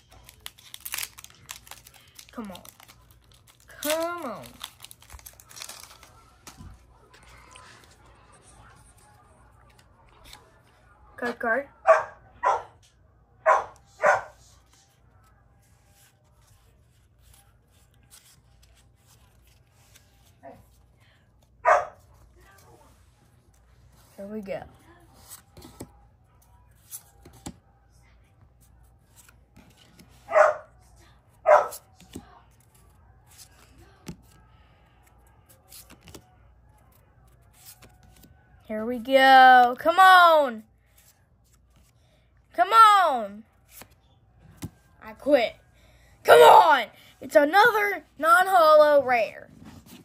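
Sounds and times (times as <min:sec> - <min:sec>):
dog barking: 0:11.8 - 0:12.8, 0:13.4 - 0:14.4, 0:21.6 - 0:22.0, 0:30.3 - 0:30.8, 0:31.4 - 0:31.8.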